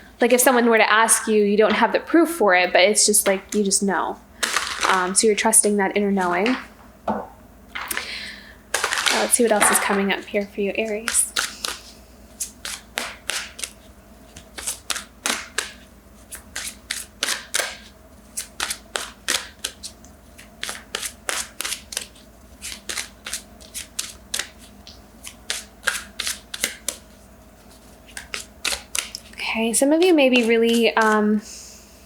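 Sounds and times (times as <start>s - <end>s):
cards being shuffled: 4.4s - 5.3s, 7.8s - 31.4s.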